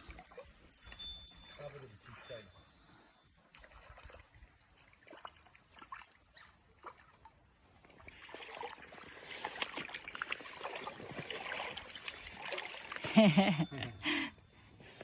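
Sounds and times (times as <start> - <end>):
stream water trickling: 0.0 - 15.0
small splashes and clicks: 3.5 - 13.2.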